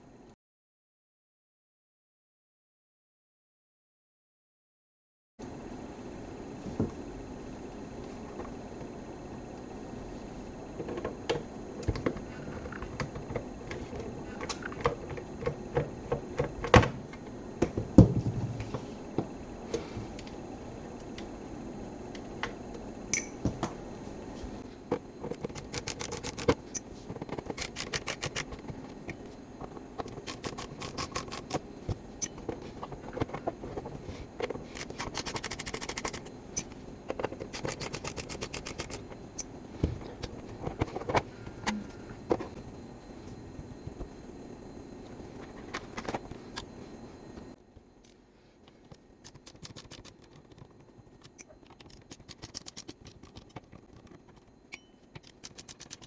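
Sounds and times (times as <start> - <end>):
fast even clicking: 49.2 - 54.5, 55.2 - 56.0.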